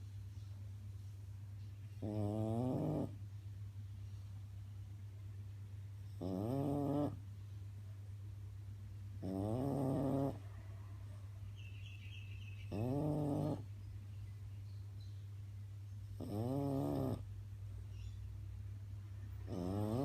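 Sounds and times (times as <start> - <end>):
dog snoring: 2.0 - 3.2, 6.1 - 7.2, 9.2 - 10.4, 12.6 - 13.7, 16.2 - 17.3, 19.4 - 20.0.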